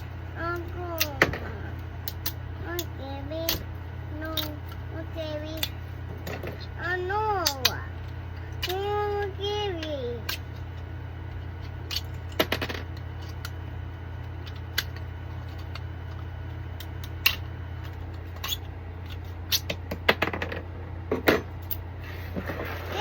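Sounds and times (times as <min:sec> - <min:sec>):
steady low hum: 0:00.0 - 0:23.0
plastic parts clicking and snapping: 0:02.0 - 0:03.6, 0:04.2 - 0:04.8, 0:14.4 - 0:19.8.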